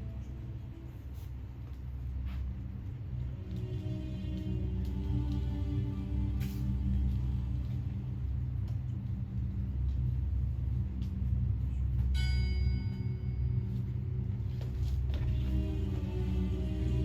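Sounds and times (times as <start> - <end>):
low music drone: 0.0 - 17.0
bell-like chime ringing: 12.2 - 13.6.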